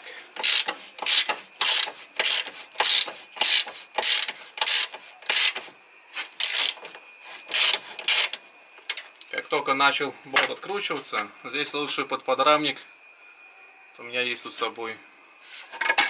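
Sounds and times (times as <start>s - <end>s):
ratchet wrench clicking: 0.4s - 5.6s, 6.4s - 6.8s, 7.5s - 9.0s.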